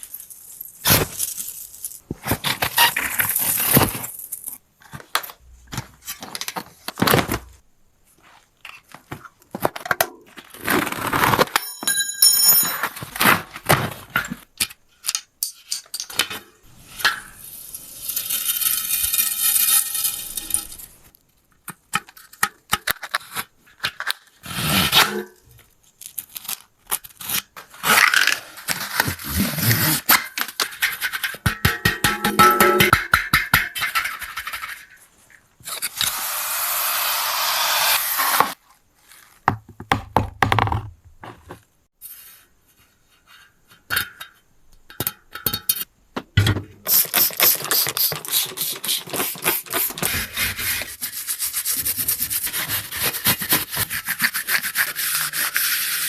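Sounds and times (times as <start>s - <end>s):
short metallic ring: 11.6s - 13.0s.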